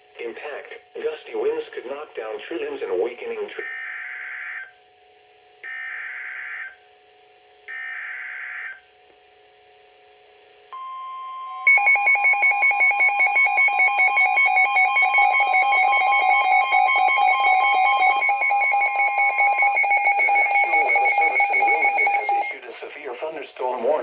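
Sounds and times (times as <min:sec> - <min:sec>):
rapidly pulsing alarm tone: 0:03.6 - 0:04.9, 0:05.6 - 0:06.9, 0:07.7 - 0:08.8, 0:10.7 - 0:22.6
steady warning alarm tone: 0:05.6 - 0:06.9, 0:07.7 - 0:08.8, 0:10.7 - 0:22.7
rasping digital data bursts: 0:11.7 - 0:22.6.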